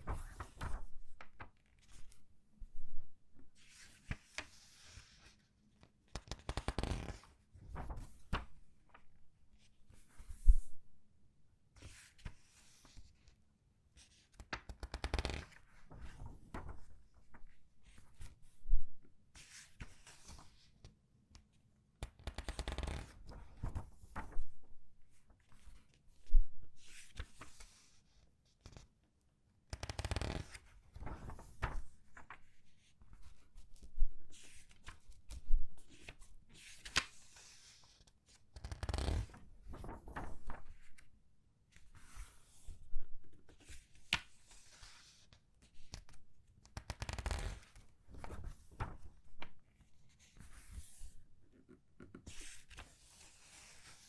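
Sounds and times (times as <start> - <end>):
paper pages rustling: 6.7 - 9.0, 22.9 - 24.4, 30.9 - 32.6, 39.0 - 41.0, 47.2 - 51.1.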